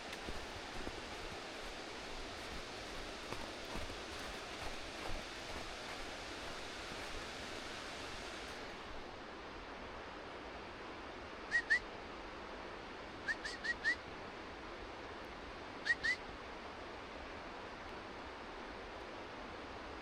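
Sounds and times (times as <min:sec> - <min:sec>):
stream water flowing: 0:00.0 - 0:09.4.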